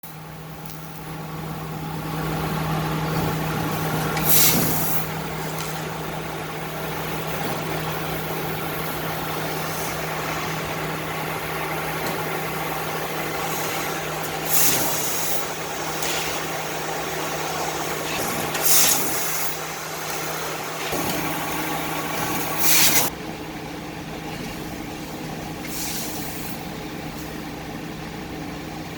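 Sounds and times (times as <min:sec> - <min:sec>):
laser cutting machine humming: 0:00.1 - 0:28.9
short bursts of hissing: 0:04.2 - 0:05.1, 0:13.5 - 0:15.4, 0:22.6 - 0:23.1.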